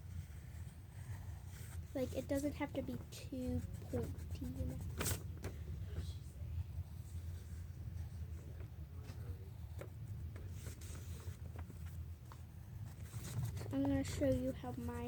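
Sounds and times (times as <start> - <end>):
steady low hum: 0.0 - 15.0
pencil scratching on paper: 0.6 - 5.2.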